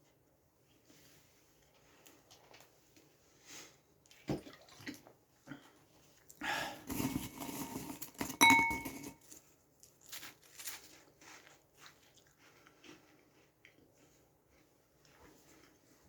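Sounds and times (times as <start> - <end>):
glass clinking: 8.2 - 9.2.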